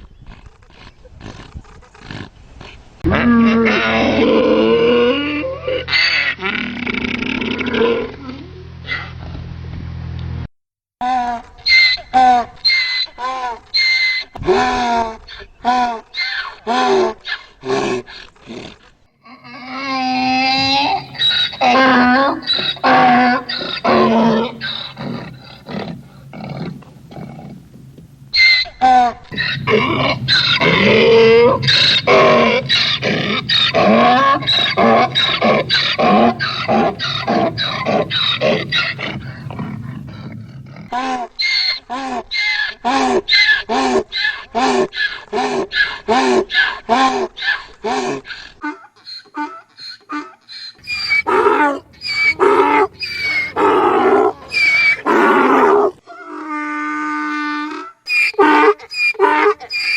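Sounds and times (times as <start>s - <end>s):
donkey braying: 3.0s - 9.2s, 19.3s - 59.9s.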